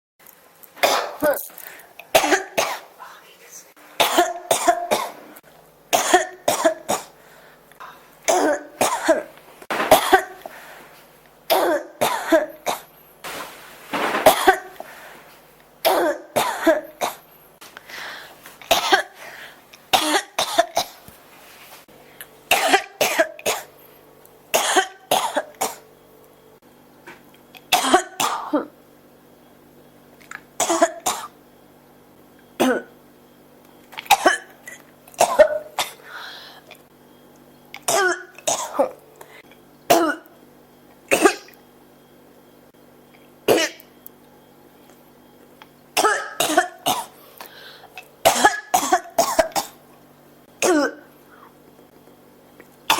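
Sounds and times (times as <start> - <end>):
person coughing: 0.8 - 2.9, 4.0 - 5.3, 5.9 - 7.2, 8.3 - 10.5, 11.5 - 12.9, 14.2 - 14.8, 15.8 - 17.2, 18.7 - 19.2, 22.5 - 23.7, 24.6 - 25.8, 27.7 - 28.7, 32.6 - 32.9, 34.1 - 36.0, 37.8 - 39.0, 39.9 - 40.3, 41.1 - 41.6, 43.5 - 43.9, 46.0 - 47.2, 48.3 - 49.8, 50.6 - 51.1.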